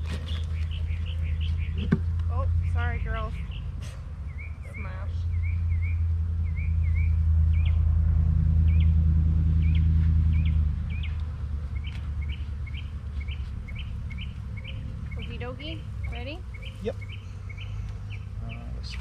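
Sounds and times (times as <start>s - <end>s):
small bird chirping: 0.0s - 7.8s, 9.6s - 19.0s
loud low rumble: 0.0s - 19.0s.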